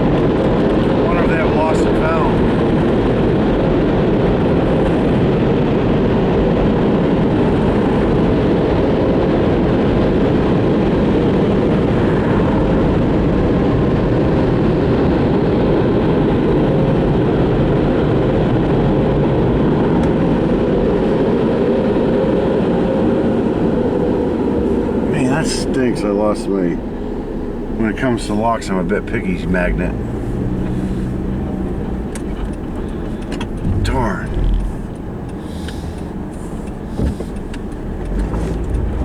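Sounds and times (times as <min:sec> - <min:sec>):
car wash machinery roaring: 0:19.2 - 0:39.0.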